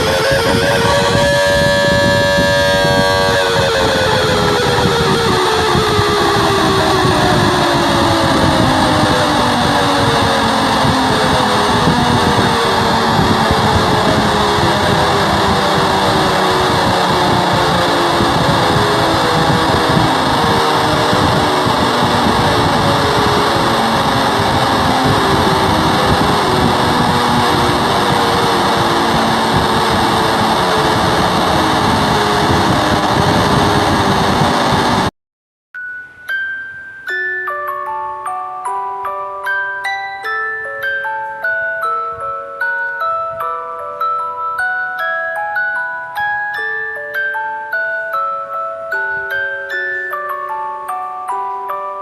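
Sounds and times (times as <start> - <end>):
distorted alarm tones: 0.0 - 35.1.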